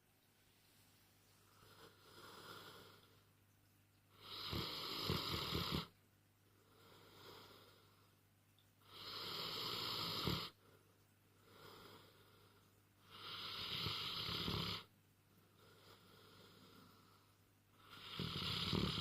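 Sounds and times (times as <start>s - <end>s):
dog snoring: 1.6s - 3.2s, 4.2s - 5.9s, 8.8s - 10.6s, 13.0s - 14.9s, 17.8s - 19.0s.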